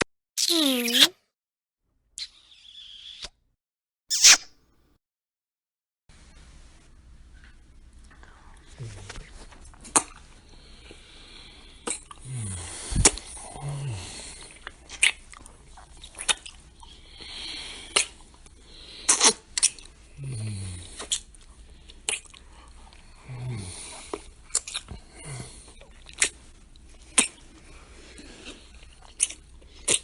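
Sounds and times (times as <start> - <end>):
lip smacks: 4.1 - 4.5, 14.6 - 16.6, 17.9 - 18.4, 21.0 - 21.4, 22.0 - 22.4, 24.1 - 25.0, 27.1 - 27.4, 28.4 - 30.0.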